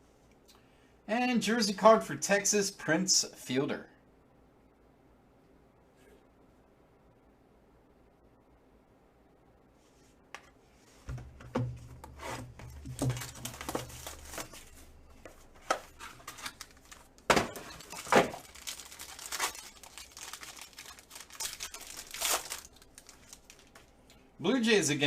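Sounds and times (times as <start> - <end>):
packaging crinkling and tearing: 12.4 - 23.9.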